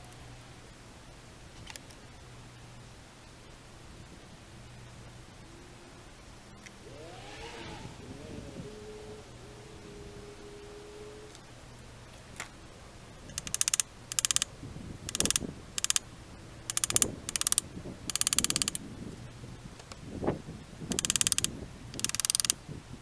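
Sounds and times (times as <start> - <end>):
socket ratchet wrench clicking: 13.3 - 14.5, 15.1 - 16.0, 16.7 - 18.8, 20.9 - 22.6.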